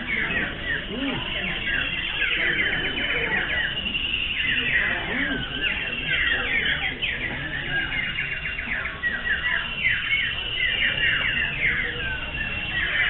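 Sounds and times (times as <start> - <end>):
birds singing whistled phrases: 0.0 - 13.0.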